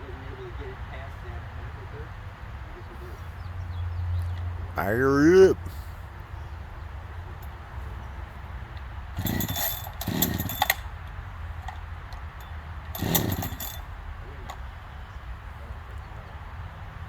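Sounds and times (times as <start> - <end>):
engine turning over: 8.7 - 14.7
chainsaw starter cord pulls: 8.8 - 11.8, 12.4 - 13.9.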